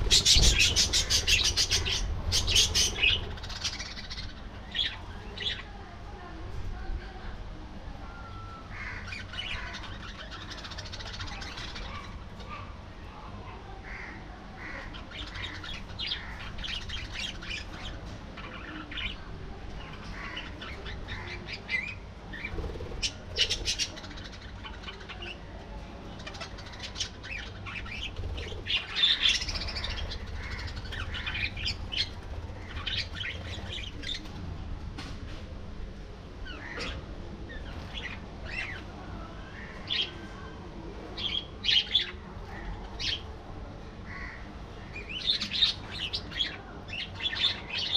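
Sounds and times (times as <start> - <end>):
budgerigars chattering and chirping: 0.0 - 5.6, 19.9 - 25.4, 26.2 - 34.3.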